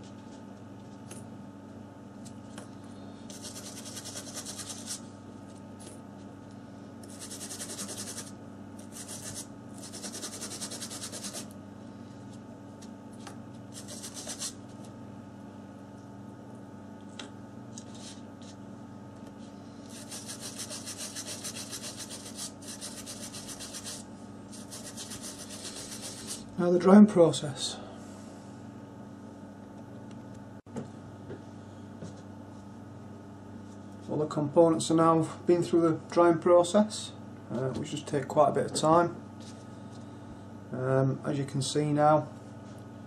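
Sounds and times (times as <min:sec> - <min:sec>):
steady low hum: 0:00.0 - 0:43.0
brush scrubbing: 0:03.3 - 0:05.0, 0:07.1 - 0:08.3, 0:08.9 - 0:11.5, 0:13.7 - 0:14.6, 0:19.9 - 0:26.5.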